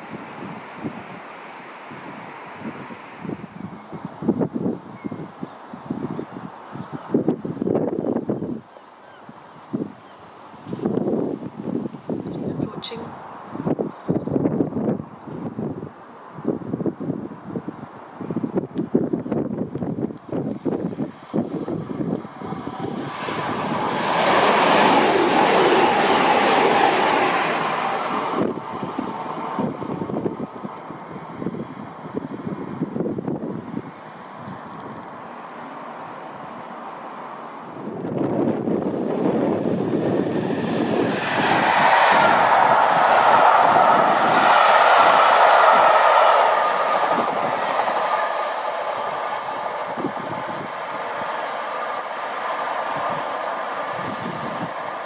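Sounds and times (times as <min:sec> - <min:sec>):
high-speed train rushing past: 0:00.0 - 0:08.7, 0:09.6 - 0:55.0
wind buffeting microphone: 0:00.0 - 0:35.2, 0:36.3 - 0:55.0
faint high whine: 0:16.7 - 0:24.0, 0:27.5 - 0:39.6.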